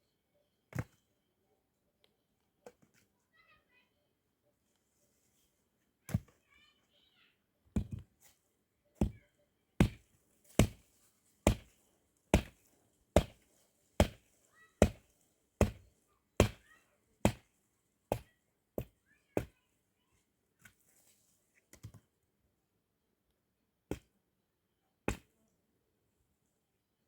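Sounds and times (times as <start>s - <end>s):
axe chopping firewood: 7.8s - 8.0s, 9.0s - 9.2s, 9.8s - 17.5s, 18.1s - 19.5s, 23.9s - 24.1s, 25.1s - 25.3s.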